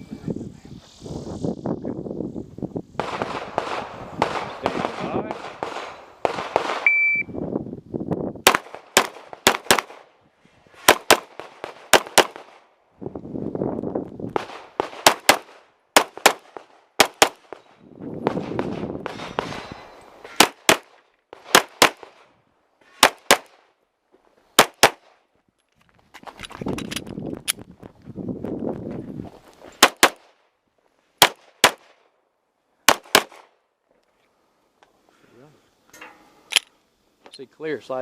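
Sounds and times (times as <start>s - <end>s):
pistol shots in quick pairs: 3.0s - 6.9s, 8.4s - 10.0s, 10.8s - 12.6s, 14.4s - 17.6s, 20.4s - 22.2s, 23.0s - 23.6s, 24.6s - 25.1s, 29.8s - 30.3s, 31.2s - 31.9s, 32.9s - 33.5s
shot timer beep: 6.9s - 7.4s.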